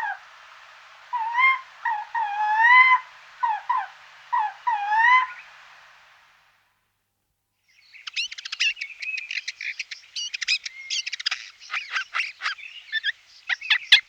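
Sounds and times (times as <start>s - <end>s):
bird singing trills and whistles: 7.7s - 14.0s.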